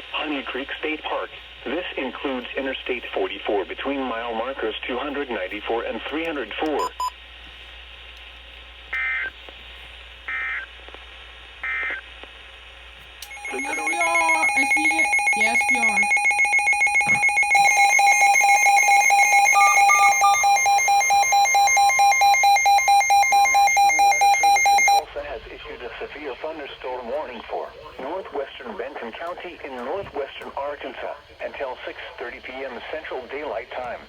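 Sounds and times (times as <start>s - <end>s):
digital header data bursts: 13.3s - 25.0s
emergency alert attention tone: 13.3s - 25.0s
person speaking: 13.4s - 22.0s.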